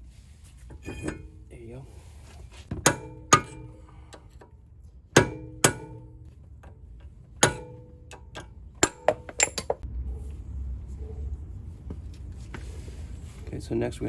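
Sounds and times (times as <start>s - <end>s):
hammer striking metal rotor: 2.8s - 4.1s, 5.1s - 6.4s, 7.4s - 9.8s.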